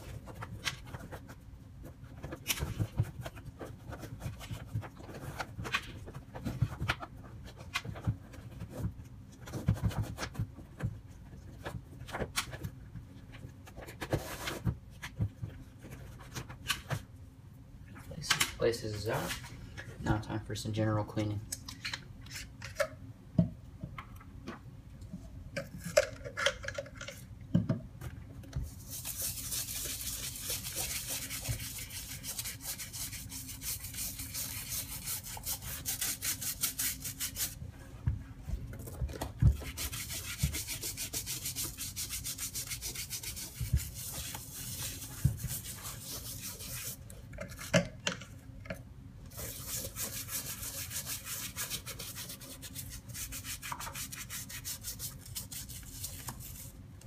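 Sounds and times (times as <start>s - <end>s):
brush scrubbing sneaker: 28.8s - 37.6s, 39.6s - 47.0s.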